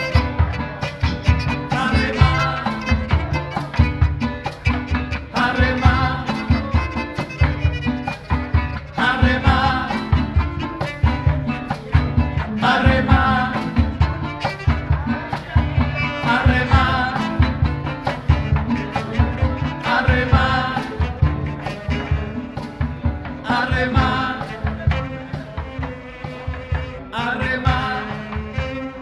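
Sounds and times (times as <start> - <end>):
violin melody: 0.0 - 9.0
pulsing bass: 0.0 - 25.2
fast rhythmic strumming: 0.0 - 29.0.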